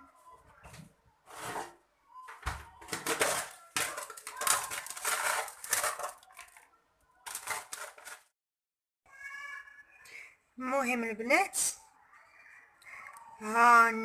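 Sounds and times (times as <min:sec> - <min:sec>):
utensils clattering against cookware: 0:02.8 - 0:06.6, 0:07.3 - 0:08.3.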